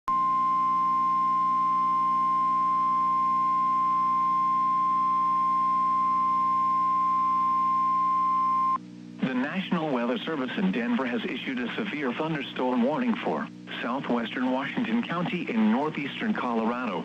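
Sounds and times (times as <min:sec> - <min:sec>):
steady alarm beep: 0:00.2 - 0:08.8.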